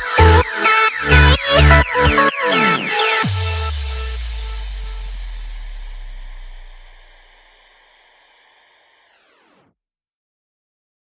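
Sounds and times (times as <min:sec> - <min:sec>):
electronic dance music: 0:00.0 - 0:09.6
deep bass note: 0:03.2 - 0:07.8.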